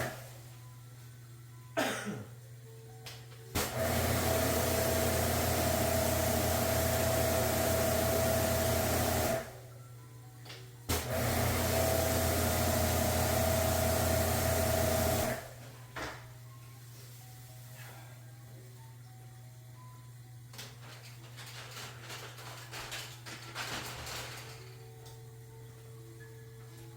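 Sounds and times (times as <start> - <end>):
pressure washer running: 3.6 - 9.6, 10.9 - 15.6.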